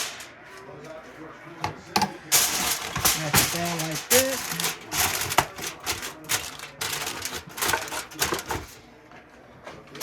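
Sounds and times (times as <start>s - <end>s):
aluminium foil crinkling: 0.0s - 0.4s, 2.2s - 8.8s.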